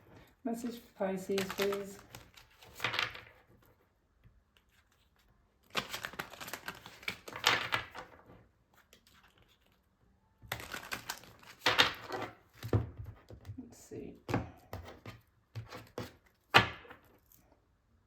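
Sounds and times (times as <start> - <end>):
cards being shuffled: 0.6 - 3.7, 4.5 - 9.8, 10.5 - 13.5.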